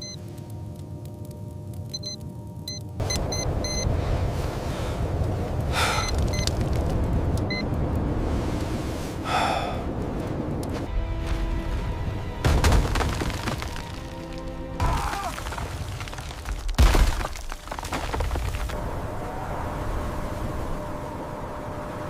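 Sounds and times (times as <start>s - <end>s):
roaring blizzard wind: 0.0s - 12.4s, 18.1s - 22.0s
dramatic music: 10.9s - 14.8s.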